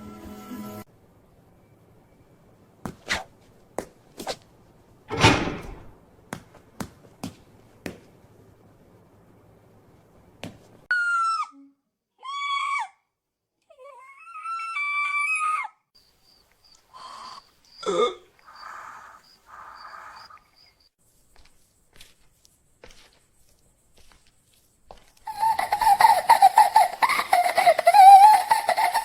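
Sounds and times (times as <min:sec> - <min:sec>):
loud thud: 0:05.1 - 0:06.0.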